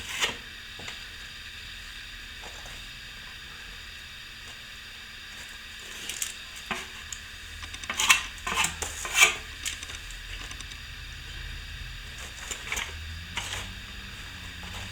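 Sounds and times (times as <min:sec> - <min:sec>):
metal scraper scratching plaster: 0:07.8 - 0:09.6.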